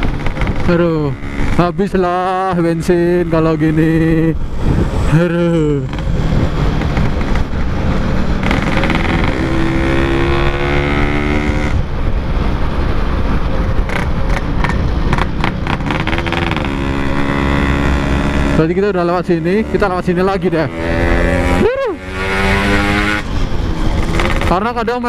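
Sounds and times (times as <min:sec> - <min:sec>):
two-stroke motorcycle engine revving: 0:00.0 - 0:04.4, 0:05.1 - 0:11.8, 0:13.8 - 0:25.0
wind rush on microphone: 0:03.2 - 0:18.5.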